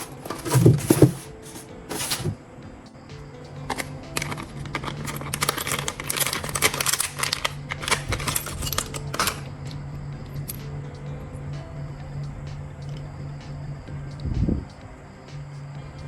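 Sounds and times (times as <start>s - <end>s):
clicks and rustling of handling: 0.0s - 2.4s, 3.6s - 9.5s
steady low hum: 7.6s - 16.0s.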